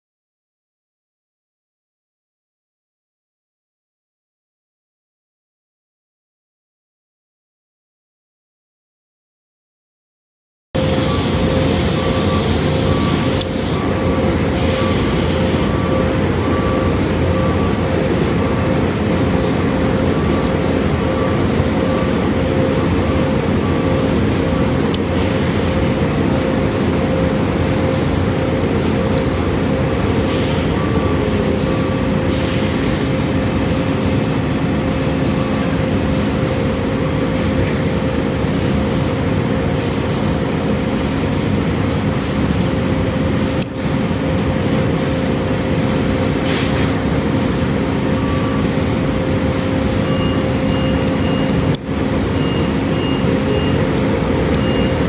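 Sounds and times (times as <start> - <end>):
short beeps: 10.8 - 18.8, 48.0 - 55.0
mechanical engine drone: 10.8 - 55.0.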